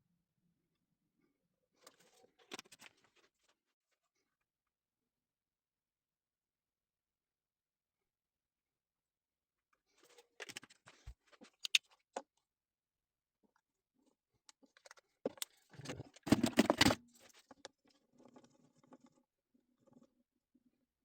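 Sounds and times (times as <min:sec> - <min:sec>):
hands handling small objects: 0:10.4 - 0:11.8.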